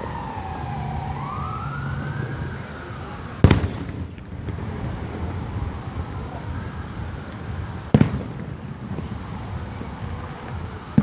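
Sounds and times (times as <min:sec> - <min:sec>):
low rumble of fireworks: 0:00.0 - 0:11.0
loud firework boom: 0:03.4 - 0:11.0.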